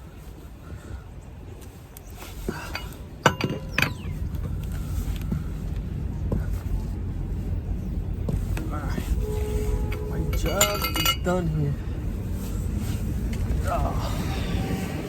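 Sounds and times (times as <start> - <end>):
steady low rumble: 0.0 - 15.0
metal tools clanking: 2.5 - 4.1, 9.2 - 11.6.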